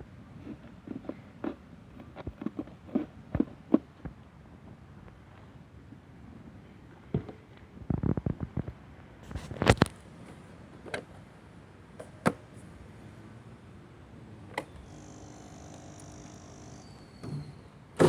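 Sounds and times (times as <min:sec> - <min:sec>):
faint steady hum: 0:09.8 - 0:18.0.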